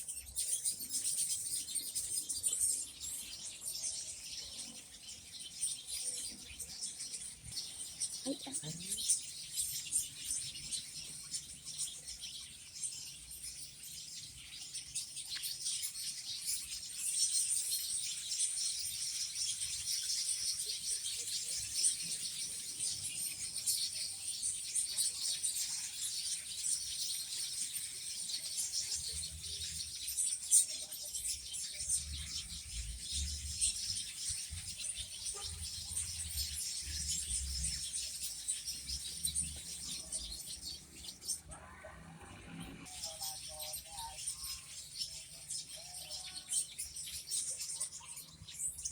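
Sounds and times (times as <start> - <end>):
small birds chirping: 0.0 - 48.9.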